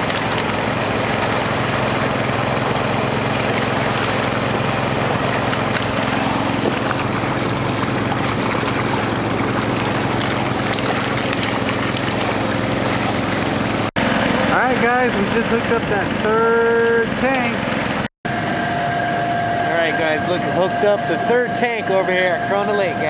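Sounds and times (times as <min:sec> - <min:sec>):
truck engine idling: 0:00.0 - 0:18.1.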